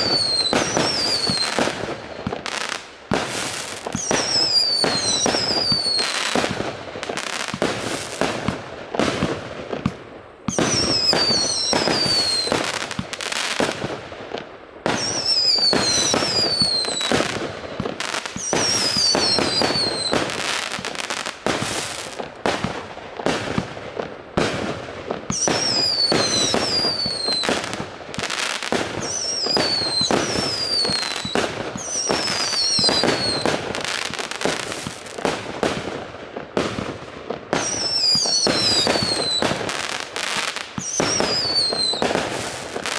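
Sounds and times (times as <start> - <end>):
firework whistles falling in pitch: 0.0 - 1.7, 3.9 - 6.3, 10.5 - 12.8, 14.9 - 17.4, 18.0 - 21.9, 25.3 - 35.0, 37.5 - 42.9
fireworks shots and crackling: 0.0 - 42.9.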